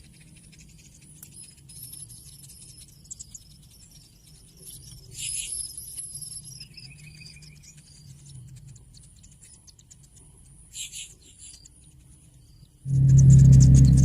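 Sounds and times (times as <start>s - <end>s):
rapid ticking bird calls: 0.0s - 14.0s
low steady hum: 12.6s - 14.0s.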